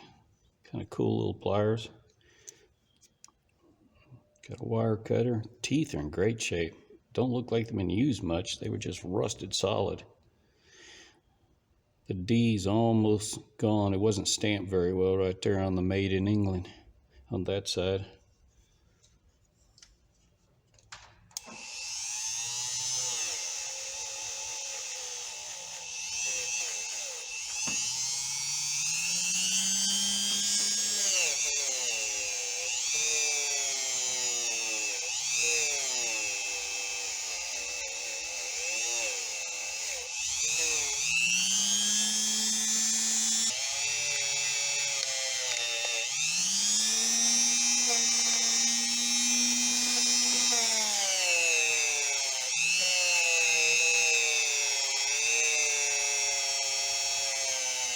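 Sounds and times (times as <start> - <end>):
electric rotary tool on steel: 21.4 - 57.9.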